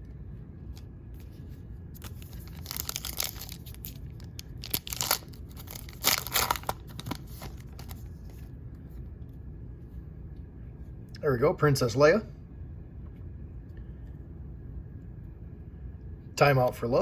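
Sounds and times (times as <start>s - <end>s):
foil wrapper tearing and crinkling: 2.0s - 8.1s.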